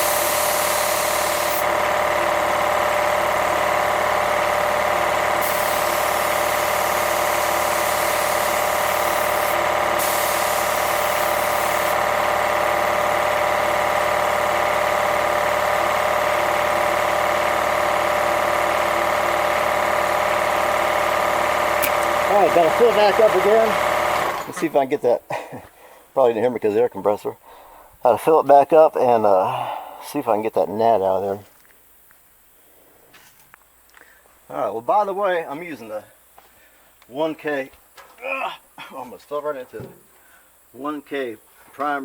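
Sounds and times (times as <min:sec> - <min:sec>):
spray gun hissing: 0:00.0 - 0:01.9, 0:05.1 - 0:12.0
air compressor running: 0:00.0 - 0:24.9.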